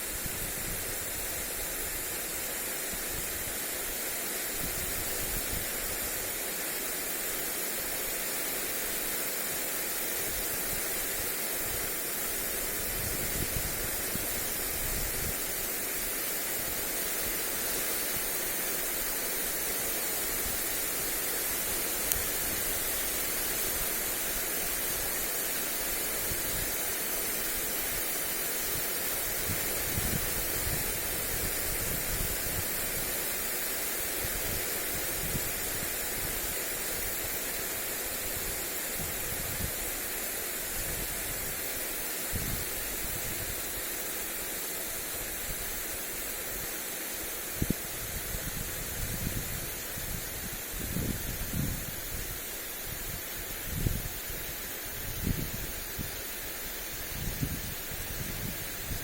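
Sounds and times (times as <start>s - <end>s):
sprinkler spraying water: 0.0s - 59.0s
wind gusts on microphone: 0.1s - 2.2s, 12.7s - 15.5s, 28.7s - 33.2s, 38.3s - 39.9s, 40.6s - 43.8s, 47.5s - 59.0s.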